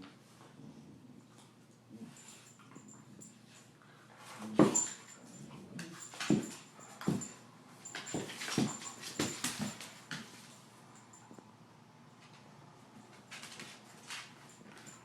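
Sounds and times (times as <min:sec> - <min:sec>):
dogs playing: 0:00.3 - 0:11.4.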